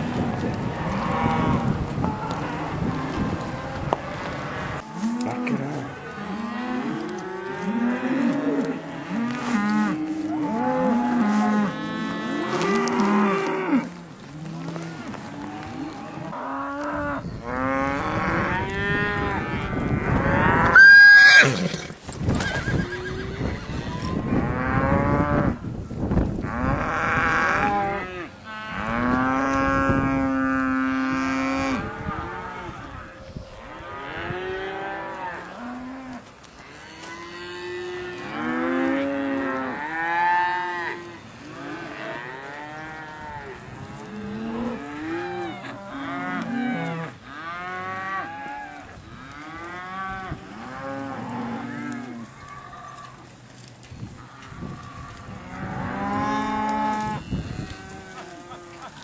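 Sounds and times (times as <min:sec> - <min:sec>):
long low moo: 0:00.0 - 0:21.2, 0:22.8 - 0:25.6, 0:26.4 - 0:53.1, 0:54.2 - 0:59.0
cattle mooing: 0:04.5 - 0:21.6.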